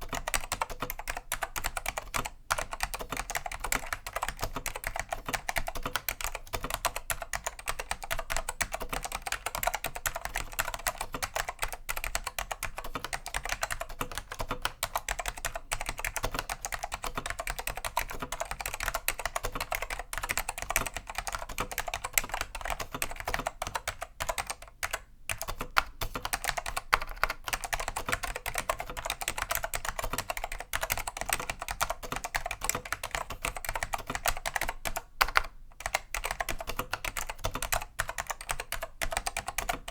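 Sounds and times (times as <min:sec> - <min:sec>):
fast keyboard typing: 0:00.0 - 0:39.9.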